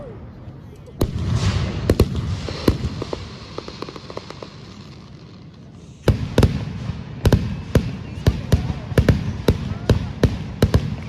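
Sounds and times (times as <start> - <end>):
fireworks crackling pops: 0.9 - 11.0
firework boom: 1.0 - 4.8
firework bangs: 1.0 - 11.0.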